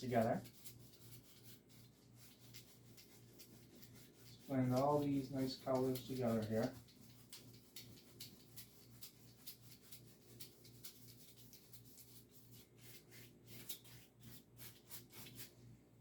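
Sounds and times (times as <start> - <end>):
paintbrush swishing on canvas: 0.0 - 15.6.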